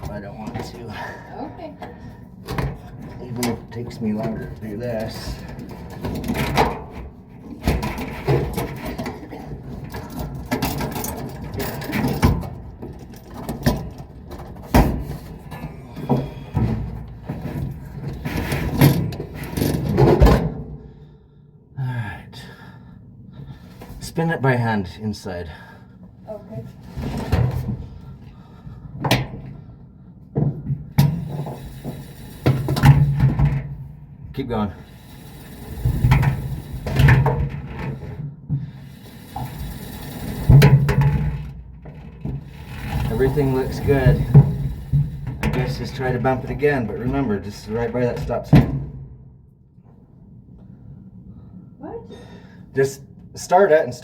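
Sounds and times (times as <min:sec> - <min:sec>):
parts knocking and clattering: 0:01.8 - 0:21.1, 0:26.9 - 0:29.7, 0:30.3 - 0:49.1.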